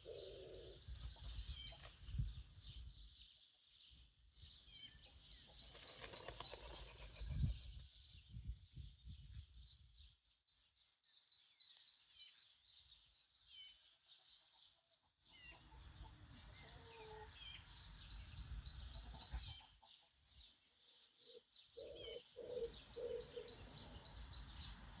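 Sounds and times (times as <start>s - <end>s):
small birds chirping: 0.0s - 25.0s
low hen clucks: 14.8s - 17.4s, 18.9s - 20.2s.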